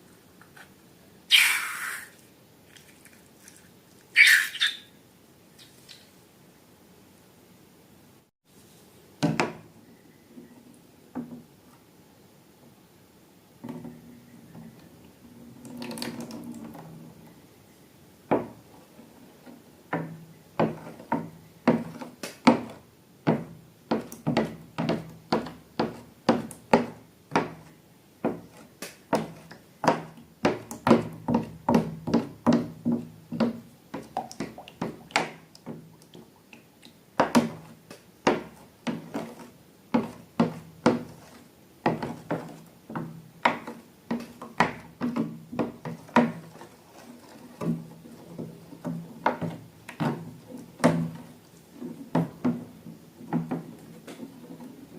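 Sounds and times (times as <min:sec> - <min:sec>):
soft rustle: 0:08.5 - 0:09.0, 0:46.4 - 0:48.8.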